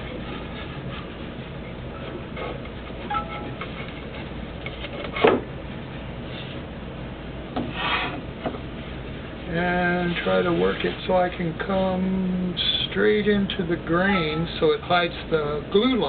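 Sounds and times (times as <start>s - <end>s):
steady low hum: 0.0s - 16.0s
knocks of wooden workpiece: 5.2s - 5.5s.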